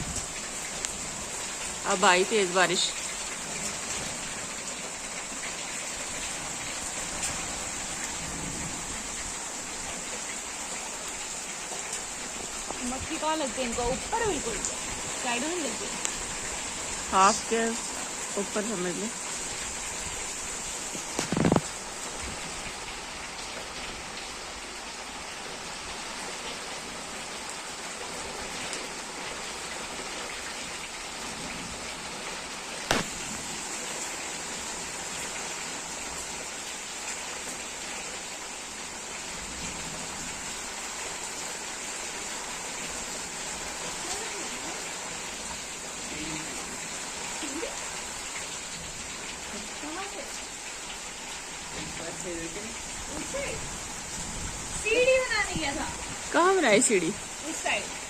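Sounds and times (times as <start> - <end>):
heavy rain falling: 0.0 - 58.0
sharp knock: 32.9 - 33.2.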